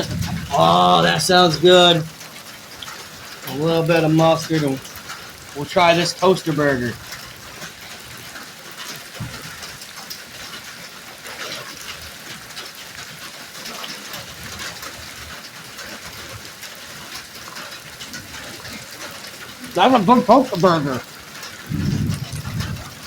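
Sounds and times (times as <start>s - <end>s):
burger patties sizzling: 0.0s - 2.1s, 5.6s - 7.0s, 19.4s - 21.0s.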